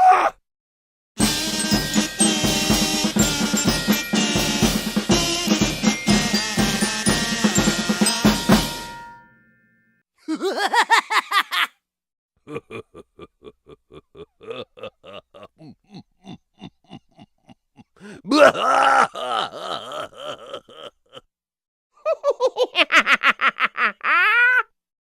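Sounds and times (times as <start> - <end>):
drum kit music sting: 1.2 - 9.2.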